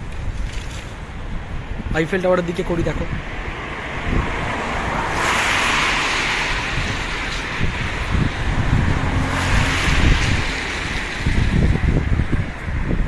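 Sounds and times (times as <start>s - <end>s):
wind gusting on microphone: 0.0s - 13.0s
tyre hiss on wet road: 4.7s - 8.6s, 9.2s - 11.8s.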